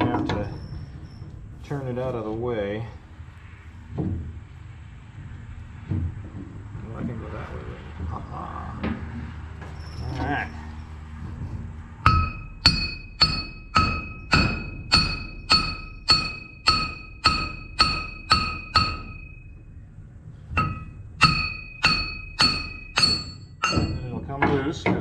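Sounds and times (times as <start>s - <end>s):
hammer striking ringing metal: 12.0s - 19.6s, 20.6s - 24.6s.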